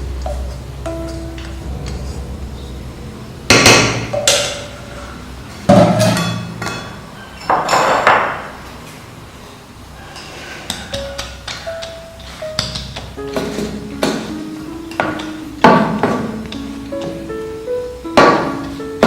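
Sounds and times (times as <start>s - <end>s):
metal spoon clanking on pot: 5.7s - 8.4s.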